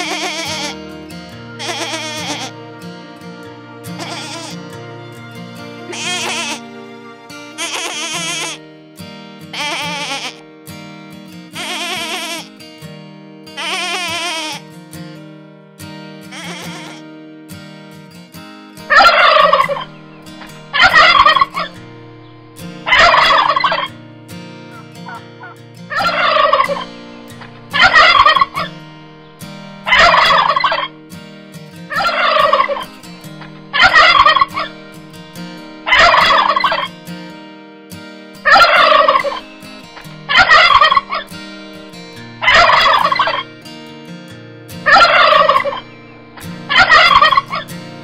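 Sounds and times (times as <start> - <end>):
turkey gobbling: 18.9 - 19.9, 20.7 - 21.7, 22.8 - 23.9, 24.7 - 26.8, 27.8 - 28.7, 29.9 - 30.9, 31.9 - 32.8, 33.7 - 34.7, 35.9 - 36.9, 38.4 - 39.4, 40.3 - 41.2, 42.4 - 43.4, 44.9 - 45.8, 46.7 - 47.7.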